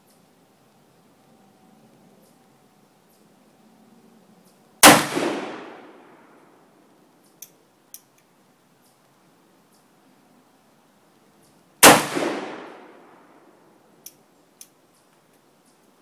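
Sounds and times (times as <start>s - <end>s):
revolver shot with ringing echo: 4.8s - 6.0s, 11.8s - 13.0s.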